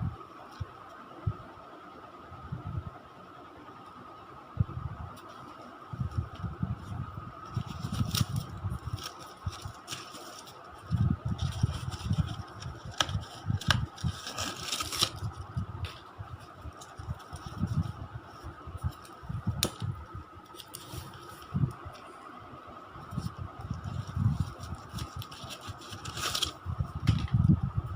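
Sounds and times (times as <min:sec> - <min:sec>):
faint steady whine: 0:00.0 - 0:27.9
packaging rustling: 0:07.5 - 0:19.9, 0:23.2 - 0:27.3.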